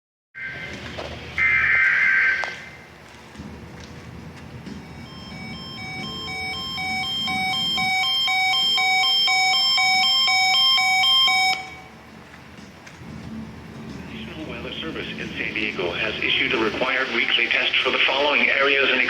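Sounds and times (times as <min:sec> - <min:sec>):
electronic two-tone warbling alert: 0:04.8 - 0:11.9.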